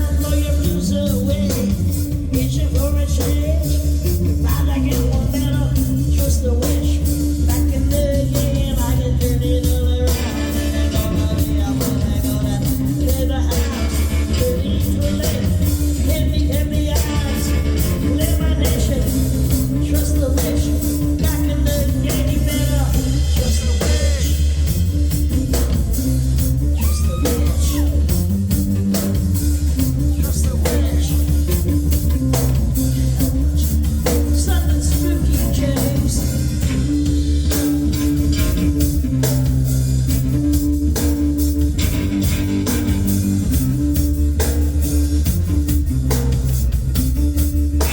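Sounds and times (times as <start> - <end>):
person singing: 0.0 - 24.6, 26.6 - 28.3, 29.8 - 39.6
rock band playing: 0.0 - 47.9.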